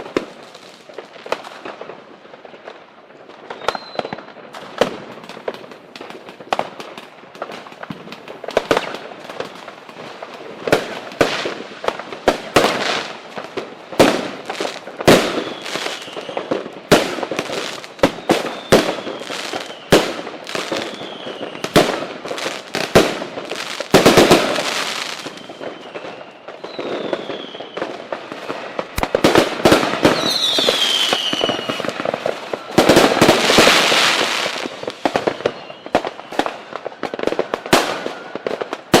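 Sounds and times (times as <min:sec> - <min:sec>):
fireworks bangs and crackles: 0:00.0 - 0:39.0
fireworks whistles sliding down: 0:03.5 - 0:04.4, 0:14.5 - 0:16.5, 0:17.4 - 0:39.0.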